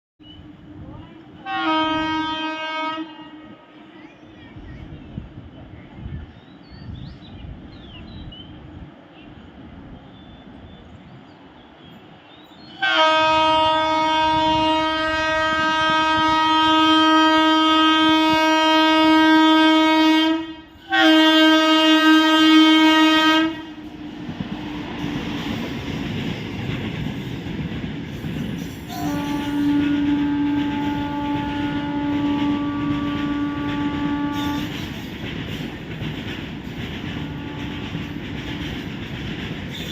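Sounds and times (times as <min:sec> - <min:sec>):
train rumble: 0:00.3 - 0:39.9
locomotive horn blast: 0:01.4 - 0:03.8, 0:12.8 - 0:24.0, 0:28.9 - 0:34.8, 0:37.2 - 0:38.0.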